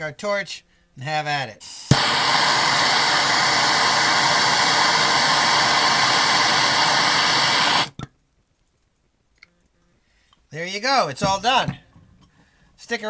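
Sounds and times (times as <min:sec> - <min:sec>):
gas torch flame hissing: 0:01.6 - 0:08.0.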